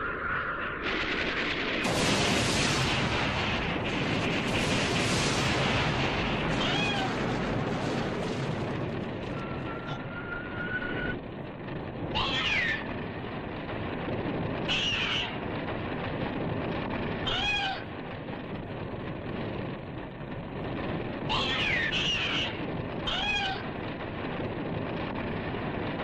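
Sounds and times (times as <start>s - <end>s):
steady noisy rumble: 0.0s - 26.0s
cat meowing: 6.5s - 7.2s, 17.2s - 17.8s, 21.3s - 23.7s.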